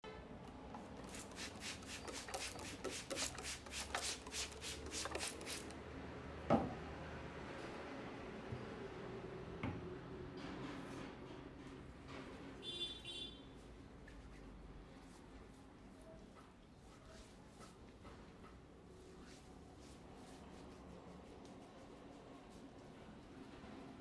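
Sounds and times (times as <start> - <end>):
hands rubbing: 1.0 - 5.7.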